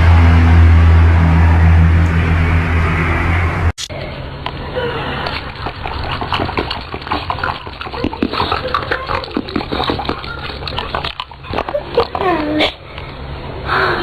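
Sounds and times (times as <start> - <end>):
water splashing: 5.2 - 12.2.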